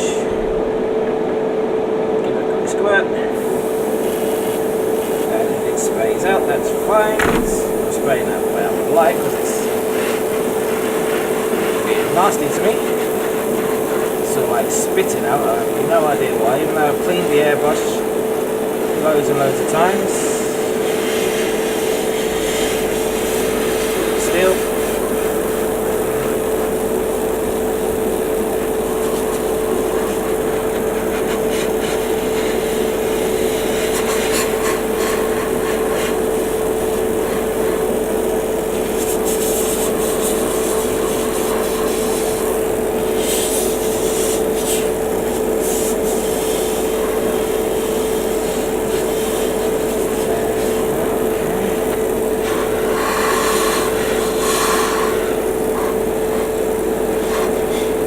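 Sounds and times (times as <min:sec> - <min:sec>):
fan and compressor humming: 0:00.0 - 0:58.0
airbrush spraying hiss: 0:03.4 - 0:15.7, 0:28.5 - 0:56.5.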